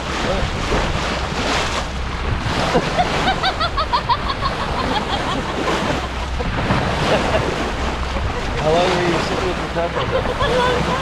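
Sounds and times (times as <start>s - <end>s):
waves: 0.0s - 11.0s
wind: 0.0s - 11.0s.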